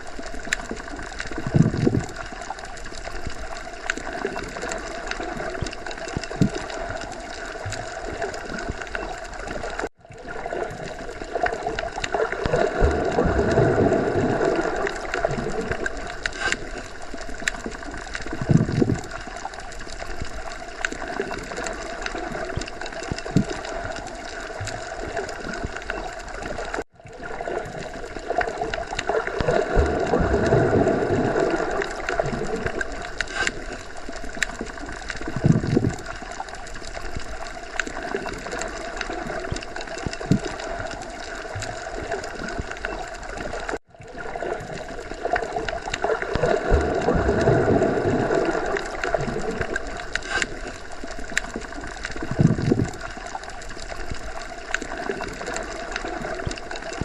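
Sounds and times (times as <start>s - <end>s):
underwater gurgling and bubbling: 0.0s - 57.0s
deeper water surge: 4.0s - 17.5s, 20.9s - 36.1s, 36.8s - 57.0s.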